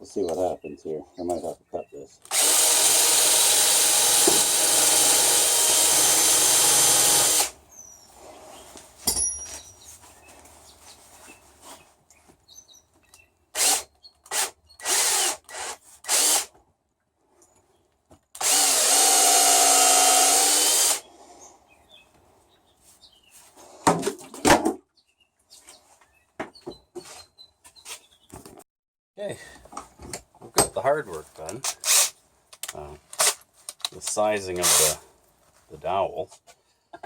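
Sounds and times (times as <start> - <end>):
power drill sanding wood dowel: 2.3 - 7.6, 13.6 - 16.5, 18.4 - 21.3, 34.6 - 35.0.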